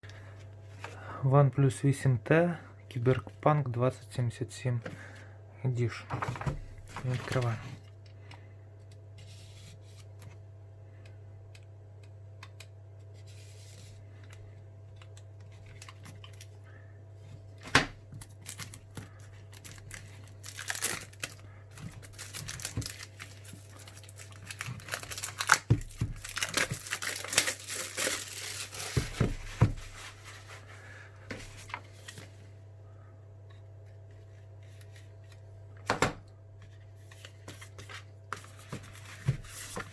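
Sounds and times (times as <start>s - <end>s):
low steady hum: 0.0s - 39.9s
packaging tearing and crinkling: 18.2s - 29.4s.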